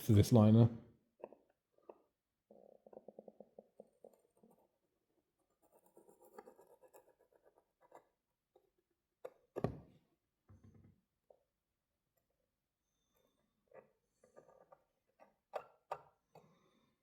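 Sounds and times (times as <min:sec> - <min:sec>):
marking tool scratching on metal: 0:05.5 - 0:08.2.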